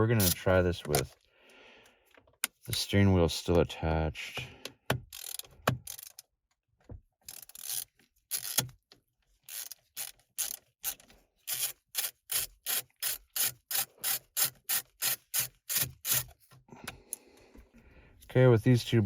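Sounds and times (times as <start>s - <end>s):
hand ratchet clicking: 0.2s - 1.2s, 4.9s - 6.2s, 7.3s - 8.8s, 9.5s - 16.4s.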